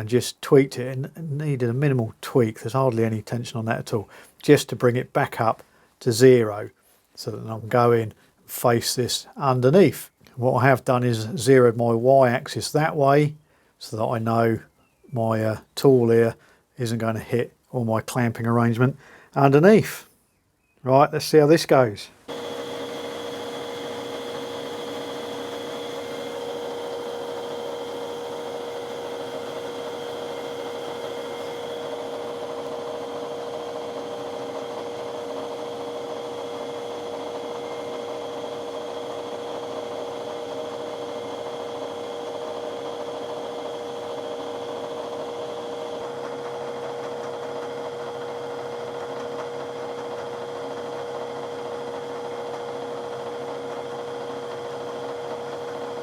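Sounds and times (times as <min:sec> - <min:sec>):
milling machine running: 0:22.3 - 0:56.0.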